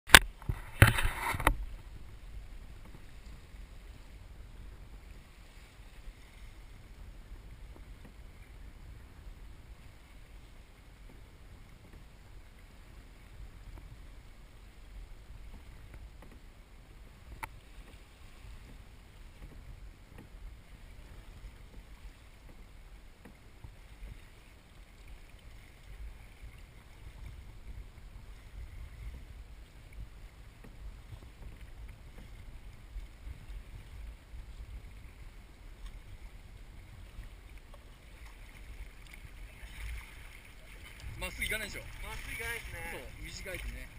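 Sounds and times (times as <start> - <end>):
wind buffeting microphone: 25.8 - 43.9.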